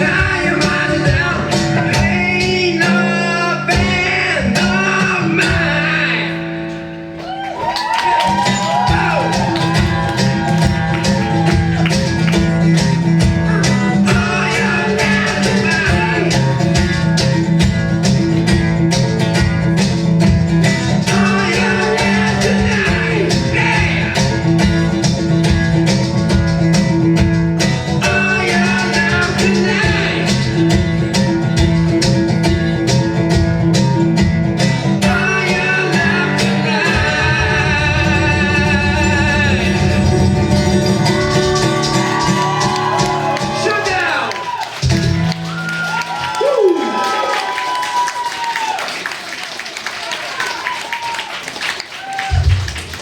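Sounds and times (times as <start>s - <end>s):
person singing: 0.0s - 6.5s, 13.4s - 16.7s, 21.0s - 24.4s, 28.0s - 30.6s, 35.0s - 43.8s
country band with guitars: 0.0s - 48.6s.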